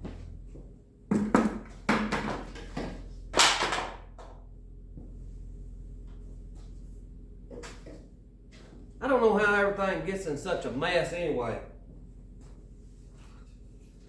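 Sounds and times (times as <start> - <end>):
objects knocking and clattering: 1.1 - 4.4.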